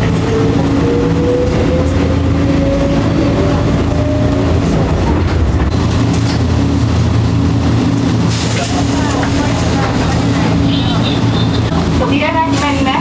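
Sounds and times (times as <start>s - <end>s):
electric train humming and whining: 0.0s - 13.0s.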